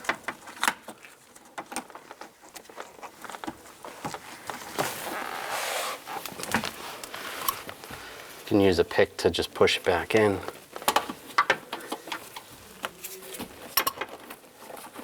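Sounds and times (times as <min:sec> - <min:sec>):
rubber rubbing: 0:04.4 - 0:08.4.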